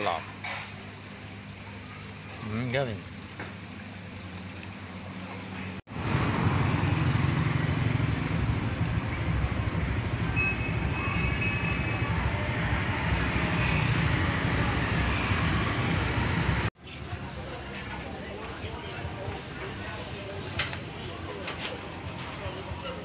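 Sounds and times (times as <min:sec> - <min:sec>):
moving vehicle noise: 0:03.6 - 0:16.8.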